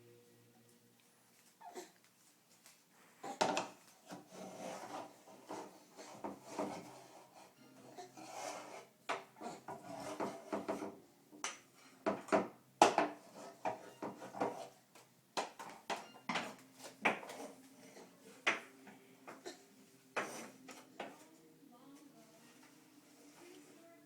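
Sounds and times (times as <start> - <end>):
hard objects knocking and clattering: 9.1 - 14.7.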